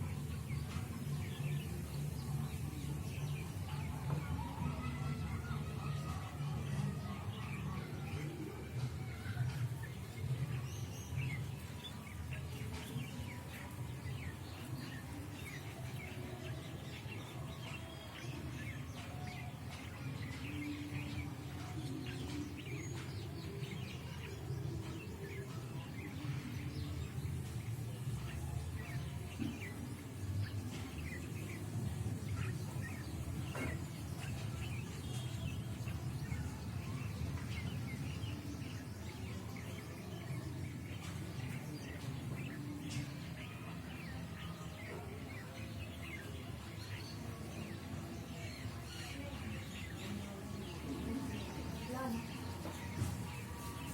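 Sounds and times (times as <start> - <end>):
birds chirping and calling: 0.0 - 53.9.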